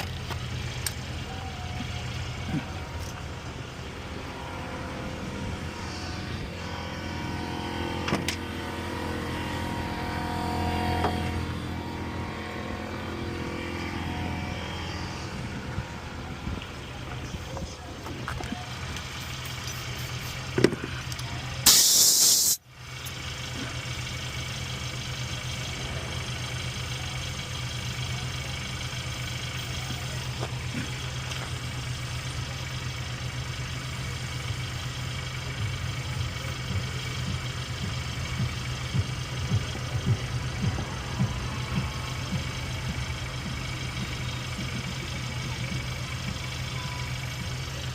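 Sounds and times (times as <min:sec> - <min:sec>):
engine idling: 0:00.0 - 0:47.9
loud hiss of escaping air: 0:21.7 - 0:22.6.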